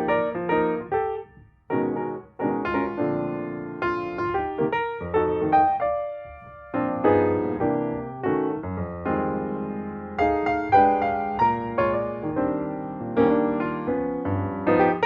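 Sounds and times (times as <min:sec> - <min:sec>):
piano music: 0:00.0 - 0:15.0.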